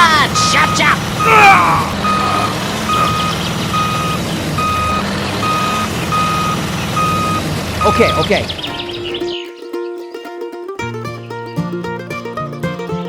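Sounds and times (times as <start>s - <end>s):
engine rumble: 0.0s - 13.0s
reversing alarm beeps: 0.3s - 8.4s.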